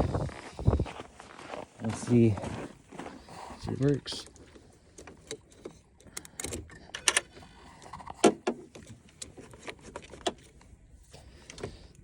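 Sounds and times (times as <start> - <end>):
sharp metal clicks and knocks: 4.1 - 10.4.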